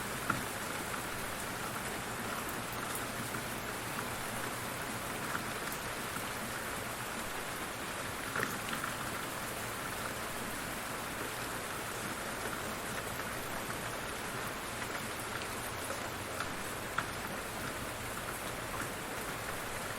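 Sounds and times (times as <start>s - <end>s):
heavy rain falling: 0.0s - 19.9s
raindrop ticks: 8.2s - 9.2s, 12.0s - 19.9s.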